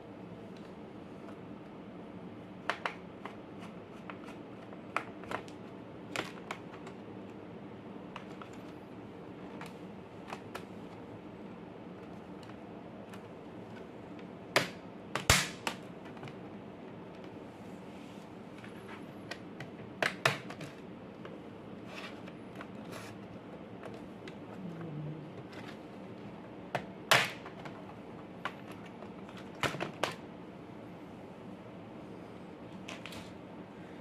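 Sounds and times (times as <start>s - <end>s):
steady low hum: 0.0s - 34.0s
clicks of laptop parts handled: 2.6s - 7.0s, 26.7s - 30.2s.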